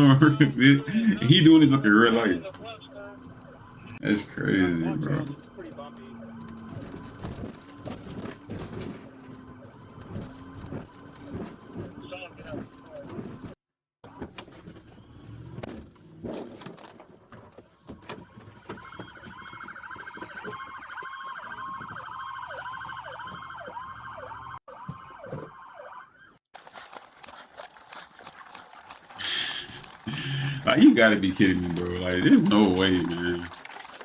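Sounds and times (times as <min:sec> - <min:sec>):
police siren: 0:00.0 - 0:15.6, 0:17.8 - 0:26.5.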